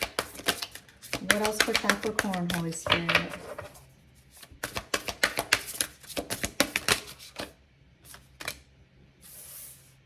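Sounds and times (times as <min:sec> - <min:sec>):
cards being shuffled: 0:00.0 - 0:02.6.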